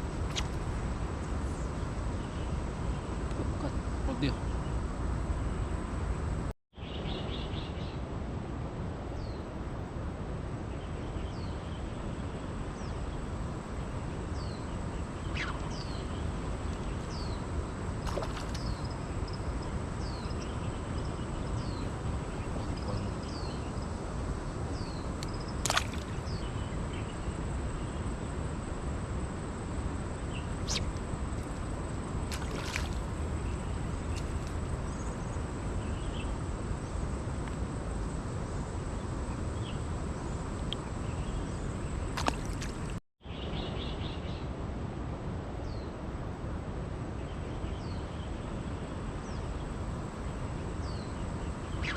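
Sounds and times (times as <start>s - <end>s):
birds chirping: 12.8s - 27.2s, 30.2s - 36.3s, 50.3s - 51.9s
stream rushing: 30.7s - 34.9s, 42.2s - 43.0s.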